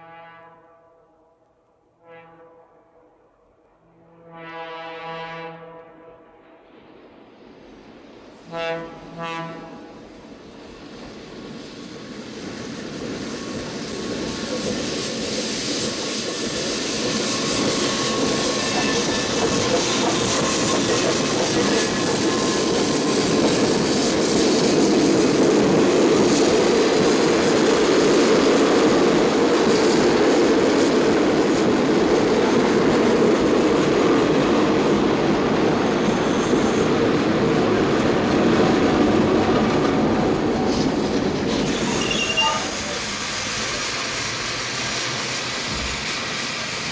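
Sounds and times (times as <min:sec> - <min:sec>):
diesel locomotive horn blasts: 0:00.0 - 0:03.1, 0:03.8 - 0:06.4, 0:08.5 - 0:10.0
train rumble and wheel noise: 0:02.7 - 0:46.9.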